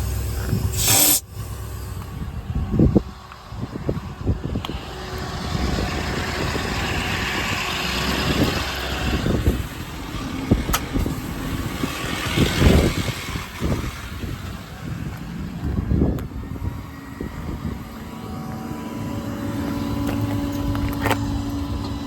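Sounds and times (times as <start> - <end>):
hiss: 0.0 - 2.1
diesel engine running: 0.0 - 22.0.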